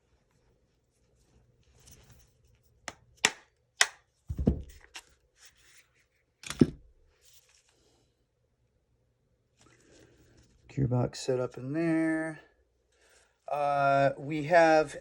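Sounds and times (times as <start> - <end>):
knock: 4.3 - 4.7
dull thump: 4.3 - 4.8.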